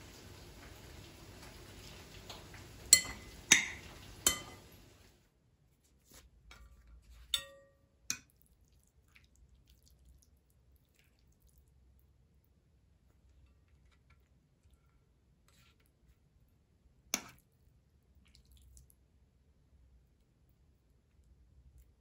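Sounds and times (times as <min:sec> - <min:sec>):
faint steady hiss: 0:00.0 - 0:05.4
kitchenware clinking: 0:00.6 - 0:05.1, 0:07.4 - 0:07.7.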